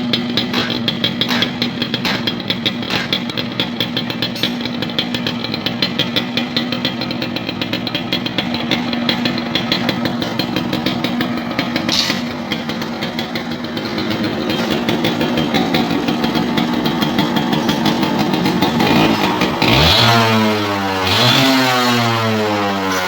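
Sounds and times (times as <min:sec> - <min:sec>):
two-stroke engine idling: 0:00.0 - 0:23.0.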